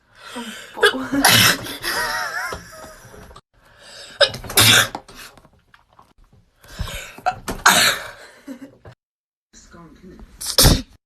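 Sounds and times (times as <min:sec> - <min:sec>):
person sneezing: 0:10.4 - 0:11.0.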